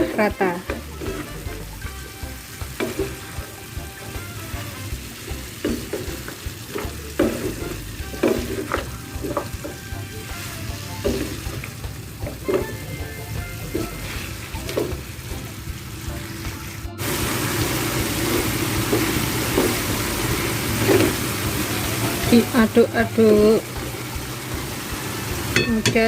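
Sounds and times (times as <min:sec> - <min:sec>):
spatula scraping a pan: 0:00.0 - 0:04.9, 0:05.6 - 0:13.0, 0:13.6 - 0:15.2, 0:17.7 - 0:22.4
food sizzling: 0:00.0 - 0:26.0.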